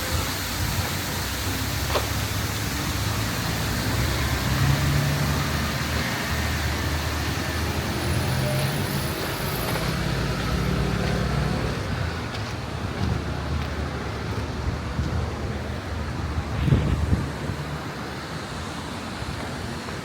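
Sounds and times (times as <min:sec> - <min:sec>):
road traffic rumble: 0:00.0 - 0:20.0.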